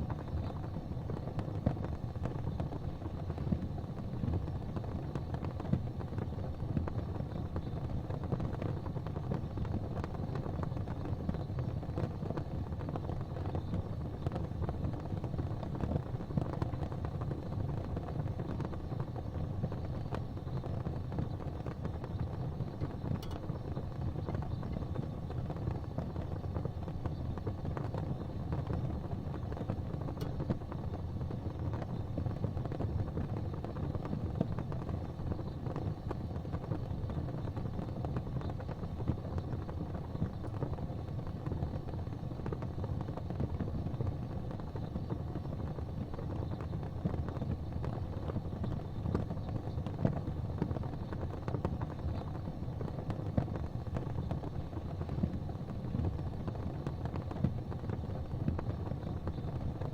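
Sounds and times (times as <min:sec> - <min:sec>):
gas fireplace flames rushing: 0:00.0 - 0:59.9
faint ticks: 0:22.8 - 0:24.8, 0:29.4 - 0:30.8.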